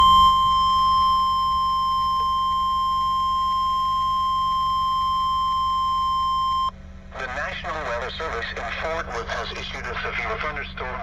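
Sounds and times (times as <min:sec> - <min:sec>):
long steady alarm beep: 0:00.0 - 0:06.8.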